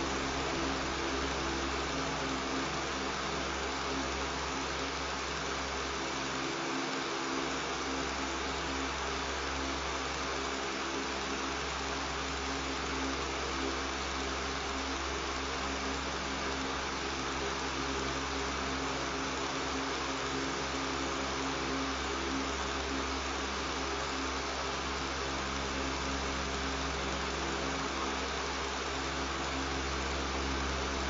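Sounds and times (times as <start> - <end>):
electric fan running: 0.0 - 31.0.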